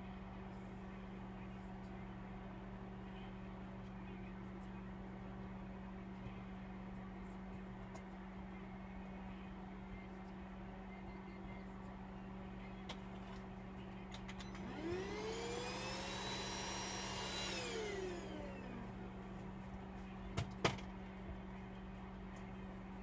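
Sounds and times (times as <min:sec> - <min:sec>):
small electric motor whining: 0:14.5 - 0:19.0.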